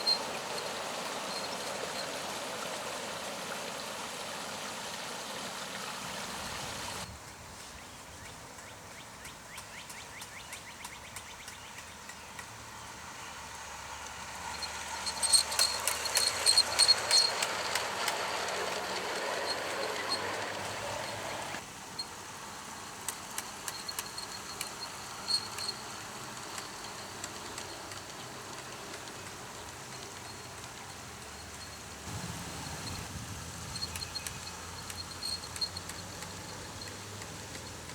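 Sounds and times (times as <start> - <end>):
model train wheels clattering: 14.0 - 21.6, 22.9 - 32.1, 33.6 - 37.9.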